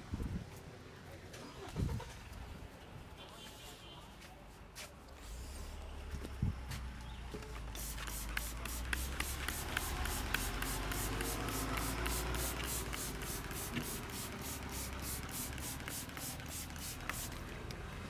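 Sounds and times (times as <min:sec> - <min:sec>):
palms rubbing over skin: 0:07.8 - 0:17.4.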